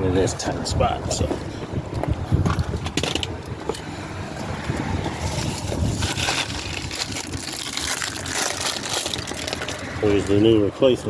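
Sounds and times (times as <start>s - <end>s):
crinkling handling noise: 5.1s - 10.6s.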